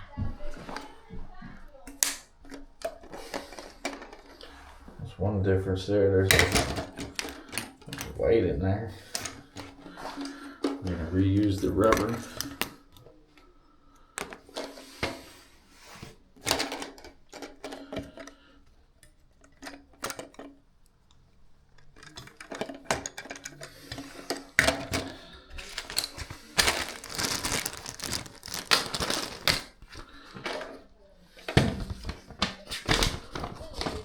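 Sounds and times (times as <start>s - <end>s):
small parts clicking and tapping: 1.8s - 4.6s, 6.3s - 8.3s, 9.0s - 15.2s, 16.4s - 30.8s.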